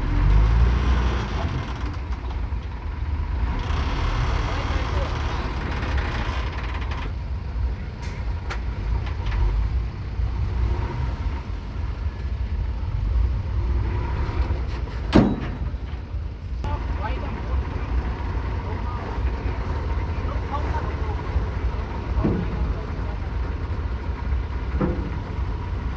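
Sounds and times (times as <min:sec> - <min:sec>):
heavy diesel engine rumbling: 0:00.0 - 0:25.9.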